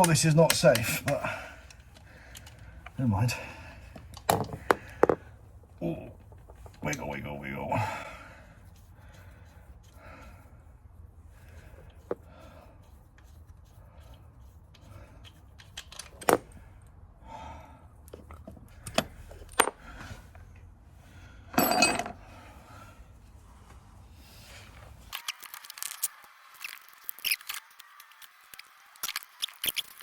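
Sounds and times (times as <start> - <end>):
metal tools clinking and scraping: 0.0 - 2.6, 21.5 - 22.2.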